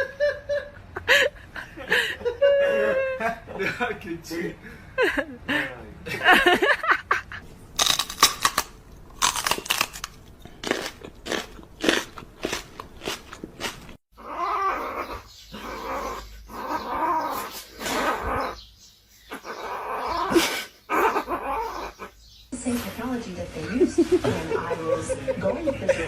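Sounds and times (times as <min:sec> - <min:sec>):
dog crunching and chewing: 0:07.6 - 0:14.0
dog vocalizing in wavering calls: 0:14.2 - 0:22.2.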